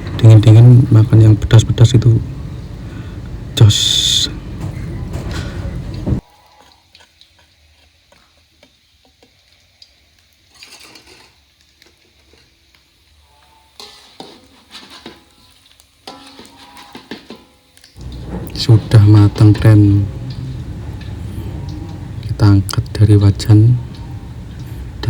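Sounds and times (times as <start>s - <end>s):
fish sizzling in oil: 6.2s - 18.4s
stirring scrapes in a wok: 10.5s - 12.5s, 13.4s - 18.5s.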